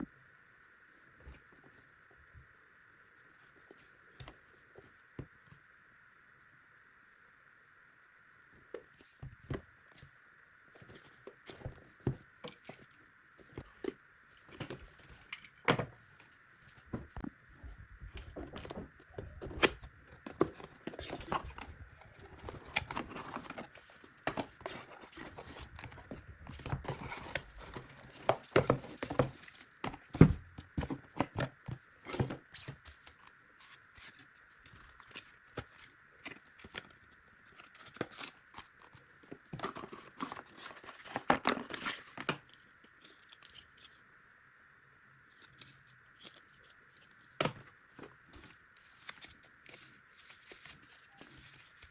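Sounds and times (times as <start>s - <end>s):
packaging rustling and tearing: 16.6s - 31.5s, 48.4s - 51.9s.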